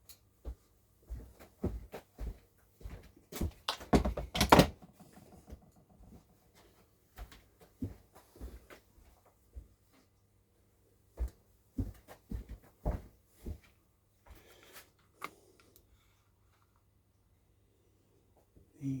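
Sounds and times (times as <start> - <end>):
knocks and clunks: 3.6 - 6.2.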